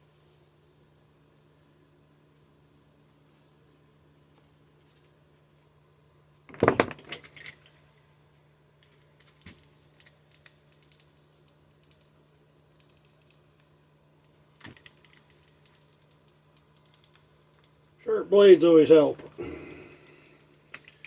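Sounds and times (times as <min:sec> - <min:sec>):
handling clatter: 0:06.5 - 0:07.7.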